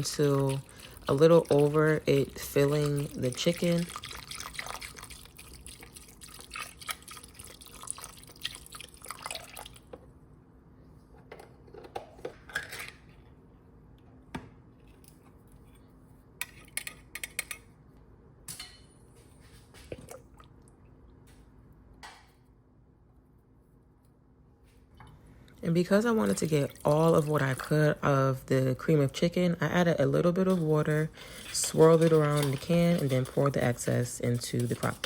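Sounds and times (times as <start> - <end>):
broth pouring and splashing: 0.0 - 9.9.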